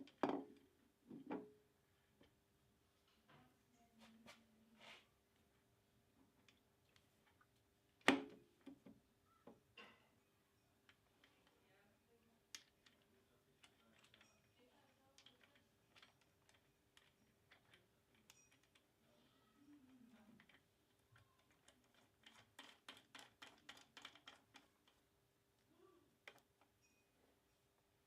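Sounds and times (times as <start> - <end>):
small tools clicking and tapping: 10.7 - 11.7, 12.5 - 25.1, 26.2 - 27.1.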